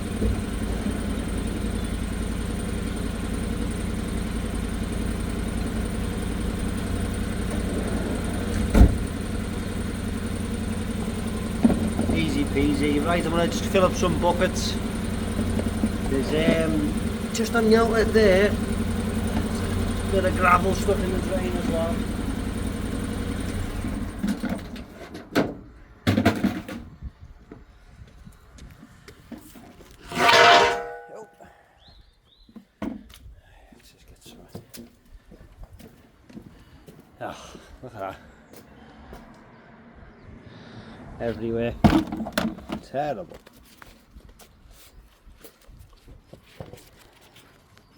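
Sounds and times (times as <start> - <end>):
drain jetter engine running: 0.0 - 24.8
sharp thump: 8.7 - 9.1
clattering knocks: 30.1 - 31.2.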